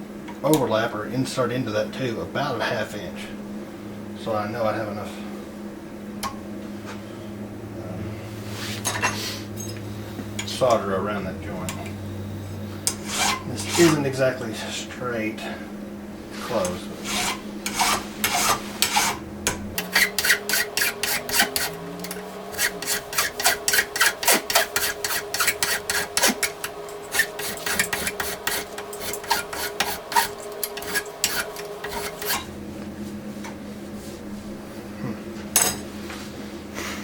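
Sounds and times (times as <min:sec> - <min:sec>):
file scraping on copper tube: 0:12.9 - 0:14.1, 0:16.3 - 0:19.2, 0:19.8 - 0:32.5.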